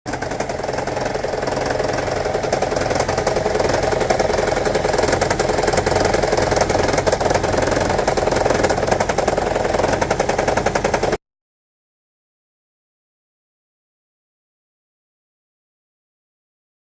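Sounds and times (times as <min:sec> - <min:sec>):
car engine rattling: 0:00.1 - 0:11.2.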